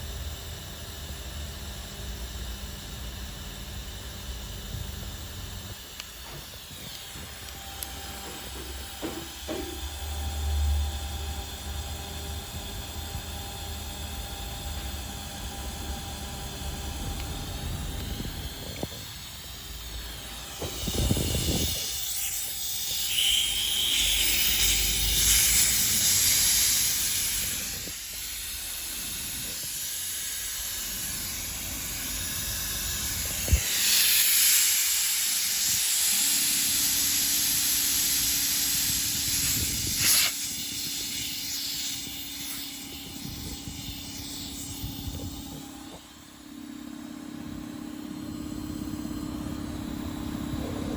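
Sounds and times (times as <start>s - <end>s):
air dryer humming: 5.7s - 9.9s, 15.3s - 44.3s
compressed air hissing: 17.3s - 45.7s.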